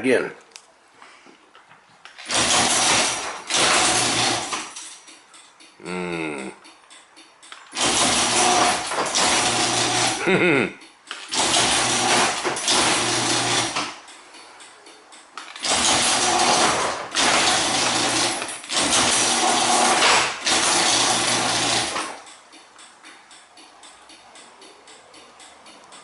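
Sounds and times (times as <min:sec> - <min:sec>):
garage door opener humming: 0:02.2 - 0:04.8, 0:07.7 - 0:10.3, 0:11.2 - 0:14.1, 0:15.5 - 0:22.4.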